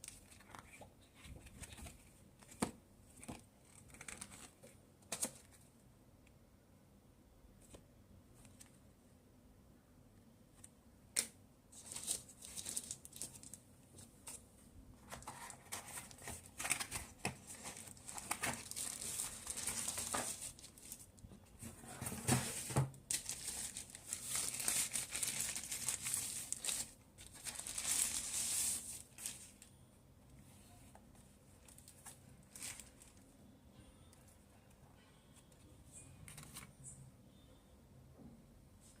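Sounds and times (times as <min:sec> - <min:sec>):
packaging crinkling and rustling: 0:11.8 - 0:14.4, 0:15.0 - 0:21.2, 0:22.0 - 0:29.7, 0:31.6 - 0:33.2.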